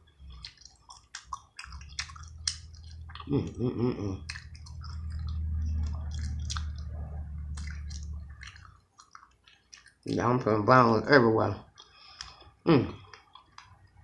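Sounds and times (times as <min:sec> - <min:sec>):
low steady hum: 0:00.0 - 0:14.0
crunchy chewing: 0:00.2 - 0:10.4
person humming mm: 0:03.2 - 0:04.3.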